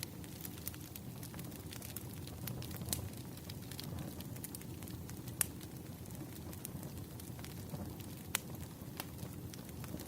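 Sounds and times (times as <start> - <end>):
burning wood crackling: 0.0 - 10.0
campfire flame rushing: 0.0 - 10.0.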